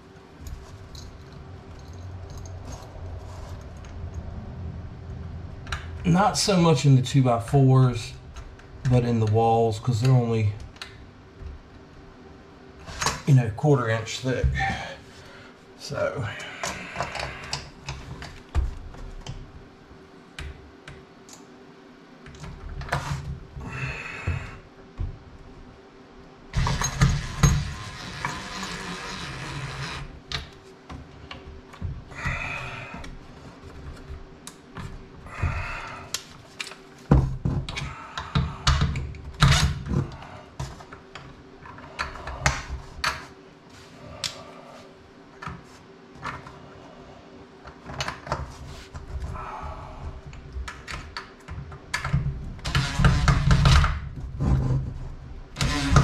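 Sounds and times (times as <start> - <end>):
drill boring holes: 26.6 - 30.1, 52.6 - 53.8, 55.6 - 56.0.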